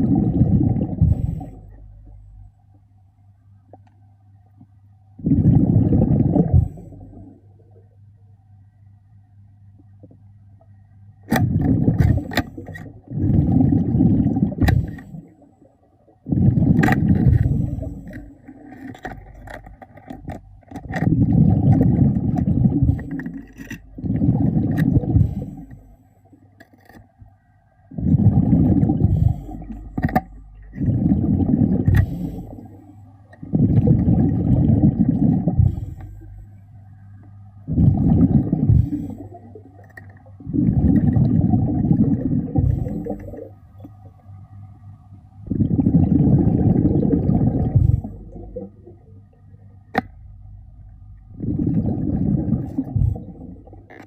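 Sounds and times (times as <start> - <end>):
diver exhaling bubbles underwater: 0.0 - 2.4, 5.2 - 7.5, 11.3 - 15.5, 16.2 - 26.0, 27.9 - 36.4, 37.6 - 43.6, 45.4 - 49.1, 51.2 - 54.0.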